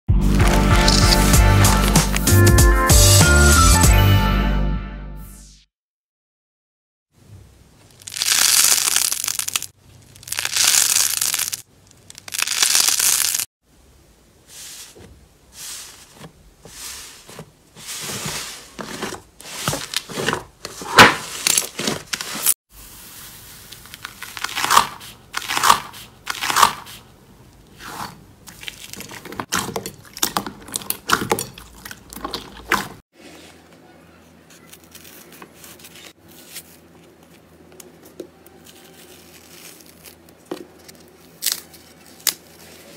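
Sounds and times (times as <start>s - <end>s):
slime crackling and popping: 8.0s - 13.5s
slime squishing: 27.8s - 33.0s.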